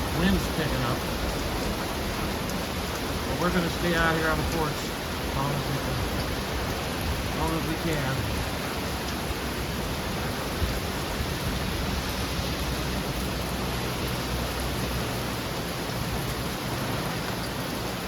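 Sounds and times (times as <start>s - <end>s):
heavy rain hissing: 0.0s - 18.0s.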